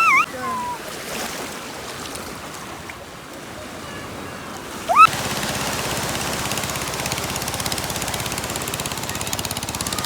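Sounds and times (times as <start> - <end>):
rising whistle-like tone: 0.0 - 0.8.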